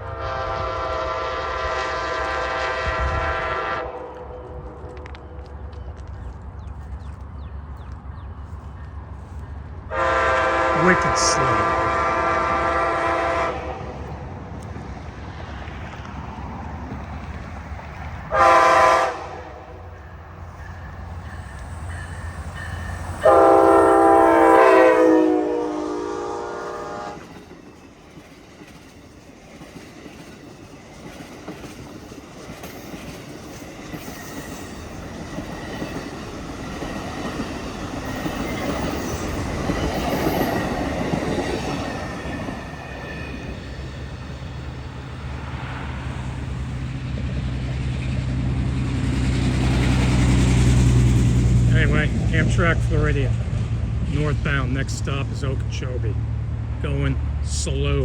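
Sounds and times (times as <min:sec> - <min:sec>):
train horn blast: 0:00.0 - 0:05.4, 0:09.9 - 0:14.2, 0:18.3 - 0:19.9, 0:22.7 - 0:27.3.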